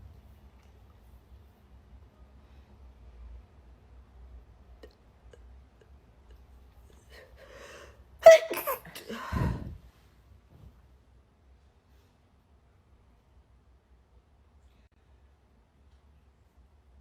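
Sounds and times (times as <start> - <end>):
breathy intake: 7.0 - 8.0, 8.6 - 9.8
person sneezing: 7.6 - 9.8.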